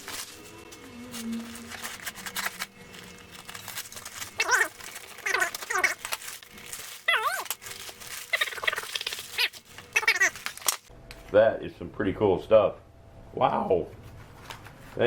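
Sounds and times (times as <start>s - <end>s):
packaging being handled: 0.0s - 10.9s
animal calling: 4.4s - 6.0s, 8.3s - 10.4s.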